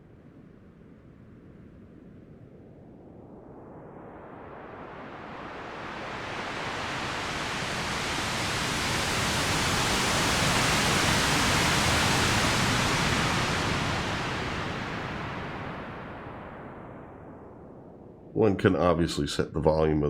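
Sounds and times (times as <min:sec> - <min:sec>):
synthesized ocean wave noise: 0:03.2 - 0:18.1.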